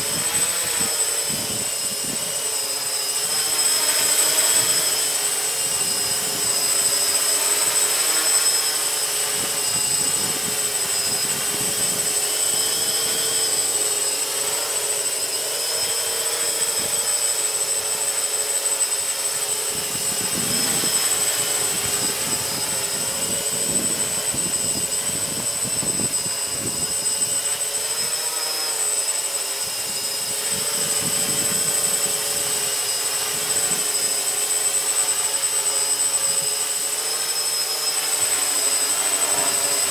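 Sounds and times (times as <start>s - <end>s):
multicopter motors whining: 0.0s - 39.9s
wind buffeting microphone: 19.7s - 27.0s, 30.5s - 32.5s.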